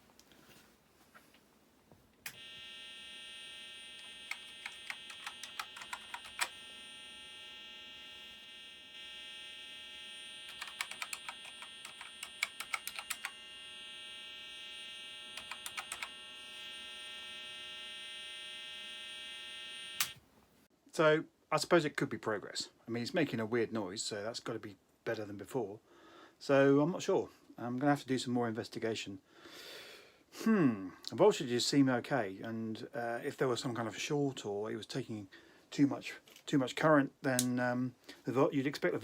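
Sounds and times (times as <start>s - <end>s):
computer speaker buzzing tone: 2.3s - 20.2s
keyboard key clicks: 10.5s - 13.3s, 15.4s - 16.1s.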